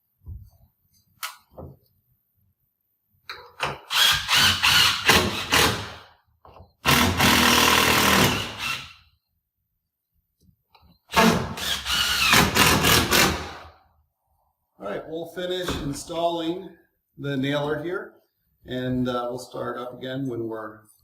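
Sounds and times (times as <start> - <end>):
power drill driving screws: 3.8 - 6.1, 6.8 - 9.0, 11.1 - 13.7.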